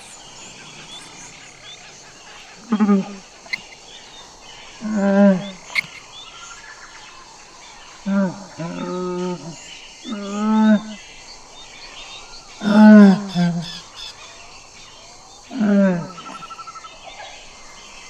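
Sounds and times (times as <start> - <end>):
birds chirping faintly: 0.0 - 18.0.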